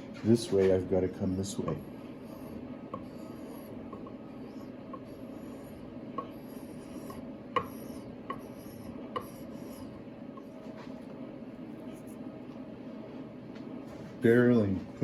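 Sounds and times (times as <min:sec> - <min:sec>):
spokeshave scraping wood: 0:01.6 - 0:11.0.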